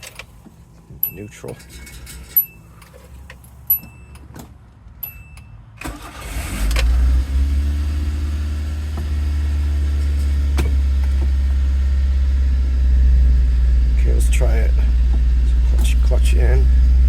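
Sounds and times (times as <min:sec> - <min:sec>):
car engine cranking and idling: 0:00.0 - 0:17.0.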